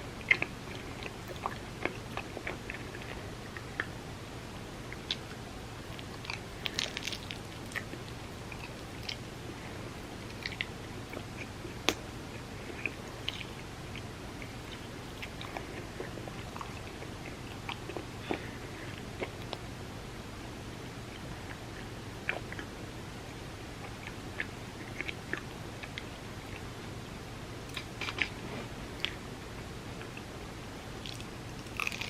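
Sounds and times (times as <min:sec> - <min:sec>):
crisp chewing and crunching: 0:00.2 - 0:04.0, 0:04.9 - 0:19.6, 0:27.7 - 0:29.2, 0:31.0 - 0:32.0.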